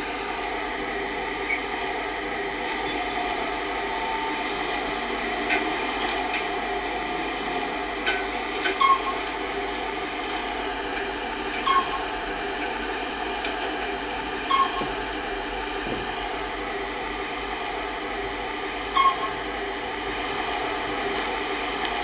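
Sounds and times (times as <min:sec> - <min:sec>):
lift humming: 0:00.0 - 0:22.0
short beeps: 0:11.6 - 0:12.0, 0:19.0 - 0:19.3.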